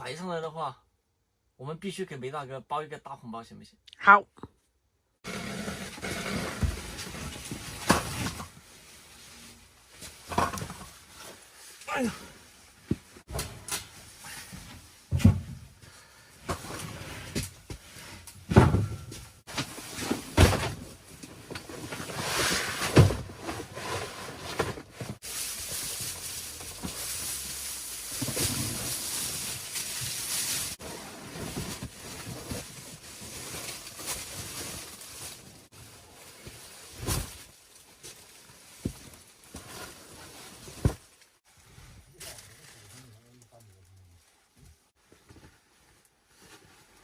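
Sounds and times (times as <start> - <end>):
knocks and thumps: 18.5 - 20.8.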